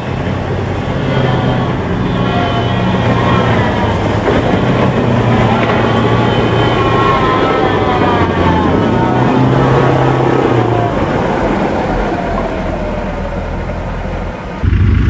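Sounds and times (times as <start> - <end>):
tracked vehicle engine running: 0.0 - 15.0
whining drivetrain: 0.0 - 15.0.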